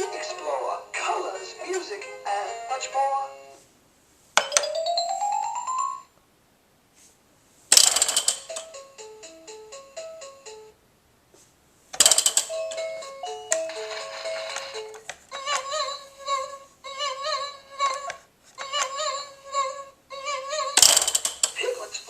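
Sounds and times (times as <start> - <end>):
toy click: 7.8 - 8.8, 12.0 - 15.7, 20.8 - 21.6.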